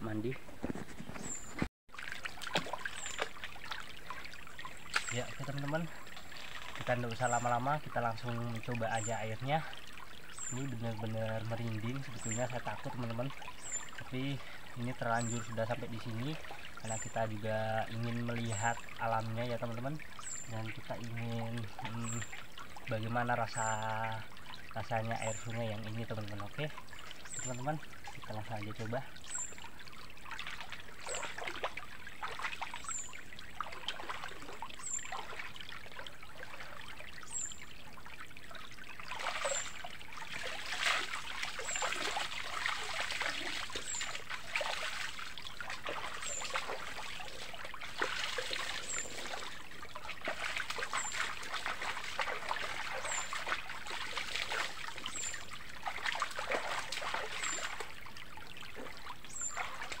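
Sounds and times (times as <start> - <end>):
river water trickling: 0.0 - 60.0
person splashing in water: 1.9 - 5.2, 30.3 - 36.8, 39.0 - 58.0.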